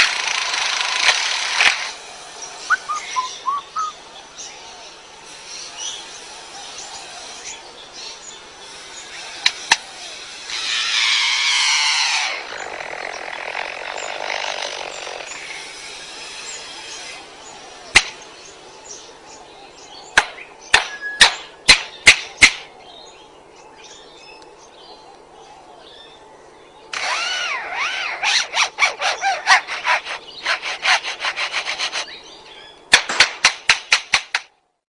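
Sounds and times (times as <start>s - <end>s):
bird rasping whine: 5.3s - 18.6s, 26.9s - 32.6s.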